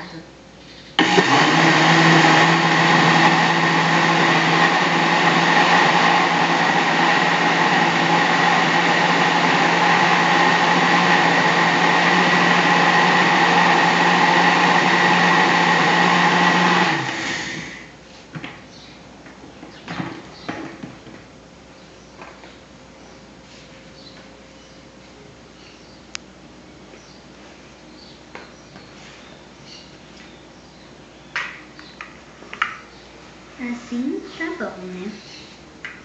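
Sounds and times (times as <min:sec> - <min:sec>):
blender motor running: 0:01.0 - 0:17.9.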